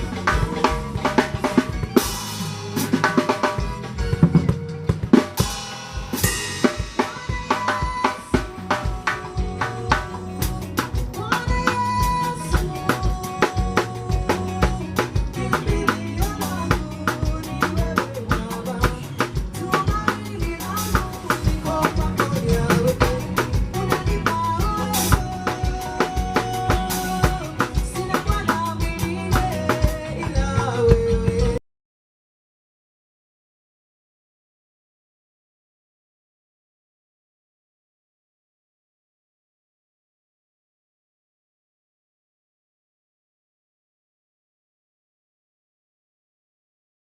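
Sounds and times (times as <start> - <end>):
drum kit groove: 0.0 - 31.6.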